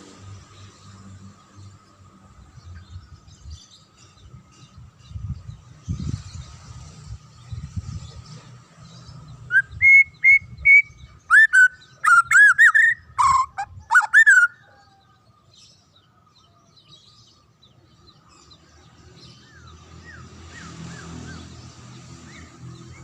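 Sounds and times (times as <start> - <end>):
songbird whistling and slurred notes: 9.4 - 14.8.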